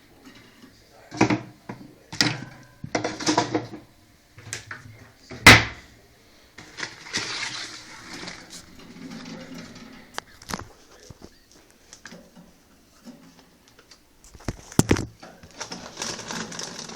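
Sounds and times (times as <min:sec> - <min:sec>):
rustling: 0:06.6 - 0:16.9.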